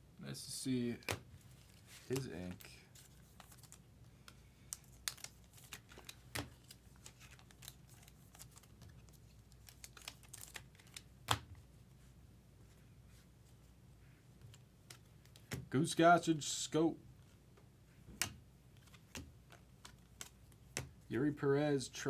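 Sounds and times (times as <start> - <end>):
trading cards clicking and sliding: 1.0 - 11.5, 18.1 - 20.9.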